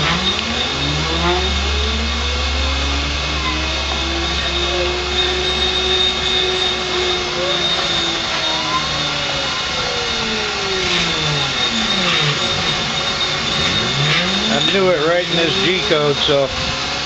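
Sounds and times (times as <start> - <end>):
drive motors whining: 0.0 - 17.0
milling spindle cutting hum: 0.0 - 17.0.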